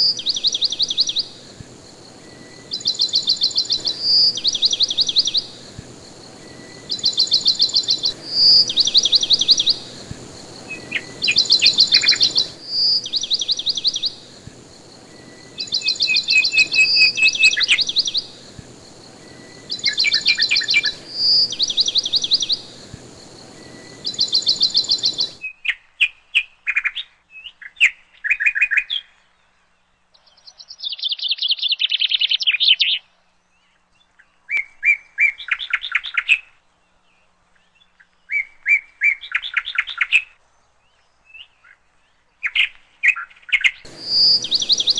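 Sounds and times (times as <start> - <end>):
birds chirping in rapid trills: 0.0 - 25.5, 39.0 - 44.9
steady background hiss: 0.0 - 44.9.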